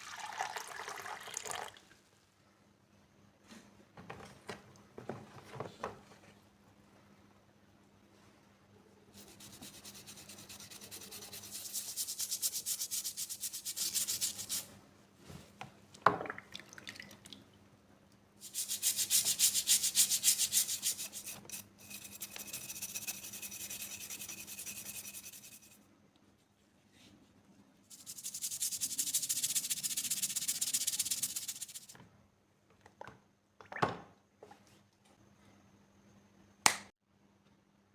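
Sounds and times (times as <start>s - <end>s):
scrubbing rust off metal: 18.4s - 25.8s, 27.9s - 31.9s.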